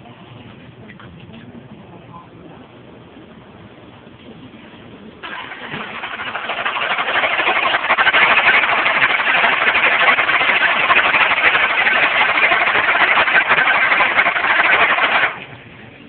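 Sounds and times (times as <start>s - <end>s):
car engine running with ticking: 5.2s - 15.5s.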